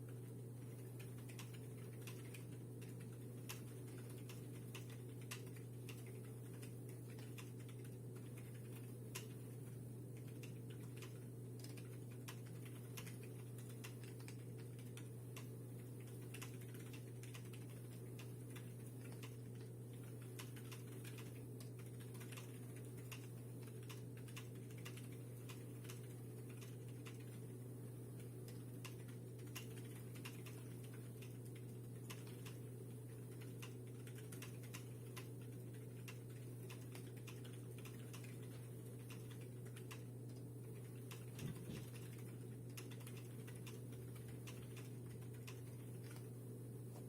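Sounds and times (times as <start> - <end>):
mechanical keyboard typing: 0.0 - 27.5, 28.2 - 46.3
steady low hum: 0.0 - 47.0.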